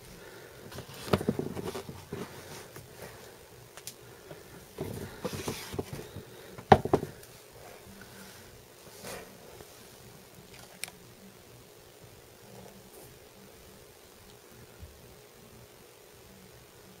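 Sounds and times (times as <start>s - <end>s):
sneaker handling rustles: 0.7s - 3.2s, 4.6s - 7.2s
small knocks: 6.6s - 7.2s.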